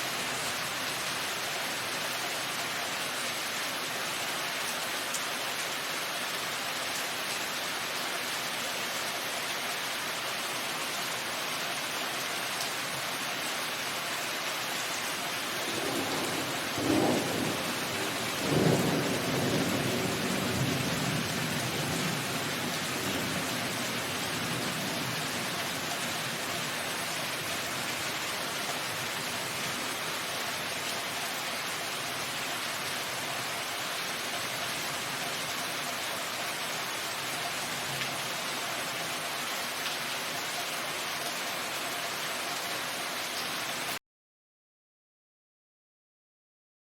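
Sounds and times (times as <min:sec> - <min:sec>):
steady rain: 0:00.0 - 0:44.0
thunderclap with rumble: 0:15.7 - 0:22.0.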